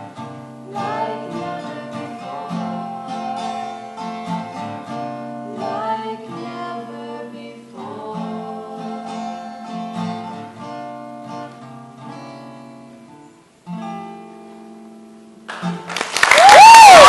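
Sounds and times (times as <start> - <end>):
acoustic guitar chords: 0.0 - 16.0
audience cheering and whistling: 16.2 - 17.0.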